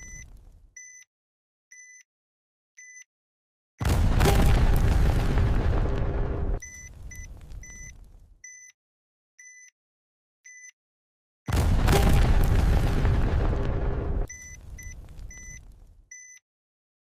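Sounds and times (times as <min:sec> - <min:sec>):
high electronic timer beeps: 0:00.0 - 0:01.1, 0:06.6 - 0:08.8, 0:09.4 - 0:09.7, 0:14.3 - 0:16.4
loud explosion: 0:03.8 - 0:08.3, 0:11.5 - 0:16.0
rumble: 0:03.8 - 0:08.4, 0:11.5 - 0:16.0.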